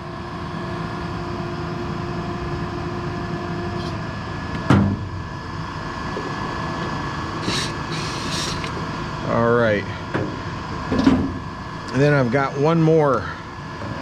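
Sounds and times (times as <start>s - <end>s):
workshop machinery hum: 0.0s - 14.0s
router motors whining: 7.2s - 9.1s.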